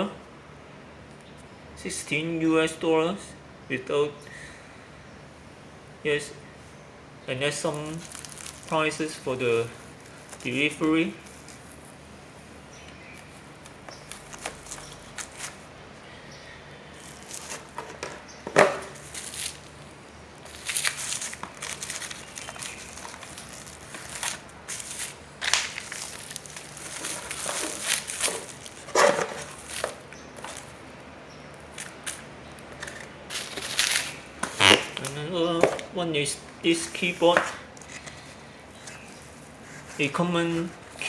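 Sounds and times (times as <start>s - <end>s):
plastic packaging crinkling: 7.6s - 15.7s, 17.0s - 18.0s, 18.8s - 30.9s, 31.6s - 35.8s, 36.8s - 41.0s.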